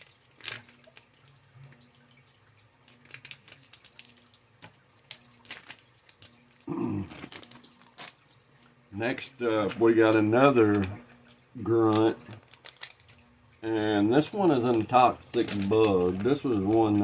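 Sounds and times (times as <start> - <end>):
packaging clicking: 3.0 - 6.4, 11.9 - 13.2, 14.4 - 17.0
person humming: 6.7 - 7.2.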